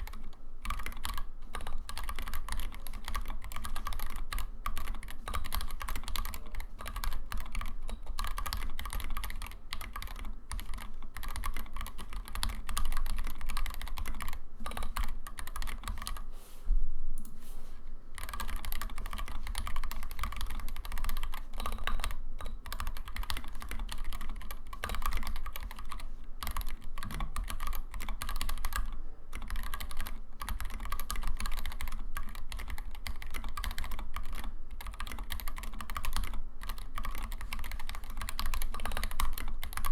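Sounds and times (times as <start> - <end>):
mechanical keyboard typing: 0.0 - 16.2, 18.2 - 39.9.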